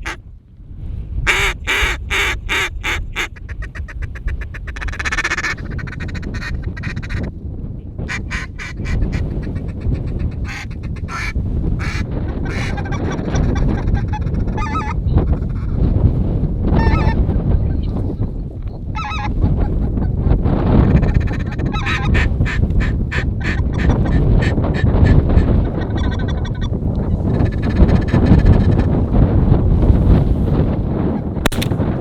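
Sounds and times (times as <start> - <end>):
ducks quacking: 0.0 - 0.2, 1.3 - 7.3, 8.1 - 15.7, 21.0 - 26.7
geese honking: 0.0 - 0.2, 1.3 - 7.2, 8.1 - 13.2, 21.0 - 25.2
wind buffeting microphone: 0.0 - 32.0.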